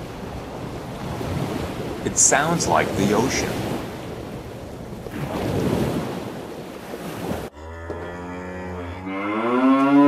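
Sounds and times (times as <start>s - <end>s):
ocean waves surging: 0.0s - 7.5s
cow mooing: 7.5s - 10.0s.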